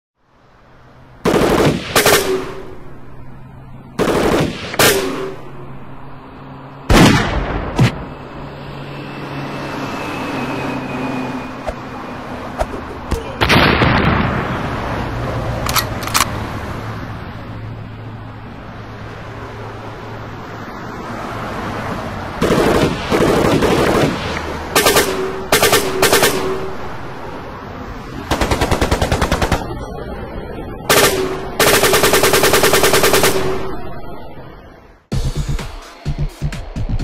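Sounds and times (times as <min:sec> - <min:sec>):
gunshots: 0:01.2 - 0:02.8, 0:04.0 - 0:05.5, 0:06.9 - 0:08.1, 0:12.6 - 0:14.6, 0:22.4 - 0:26.8, 0:30.9 - 0:33.8
explosion with rumbling decay: 0:06.9 - 0:08.0, 0:13.4 - 0:14.7
sharp mechanical clicks: 0:15.6 - 0:16.4.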